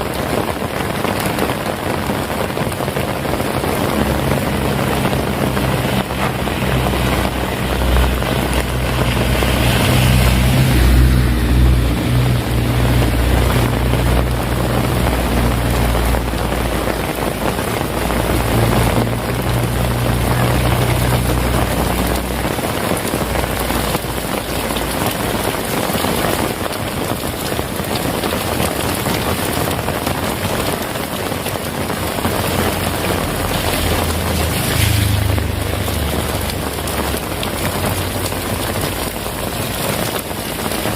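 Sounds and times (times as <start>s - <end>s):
heavy rain falling: 0.0s - 40.9s
low rumble: 0.9s - 26.6s.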